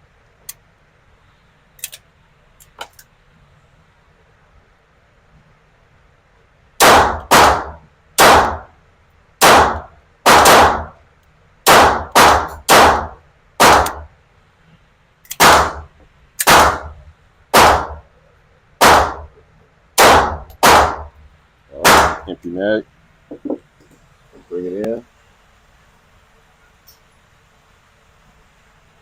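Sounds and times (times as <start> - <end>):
rifle shots: 6.8 - 8.7, 9.4 - 11.0, 11.6 - 14.1, 15.4 - 18.1, 18.8 - 19.3, 20.0 - 21.2, 21.8 - 22.4.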